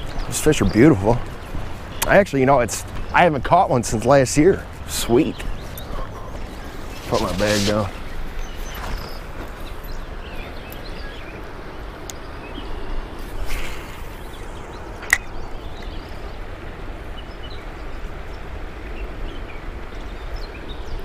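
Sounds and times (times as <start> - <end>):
fishing rod swish: 13.2 - 14.2.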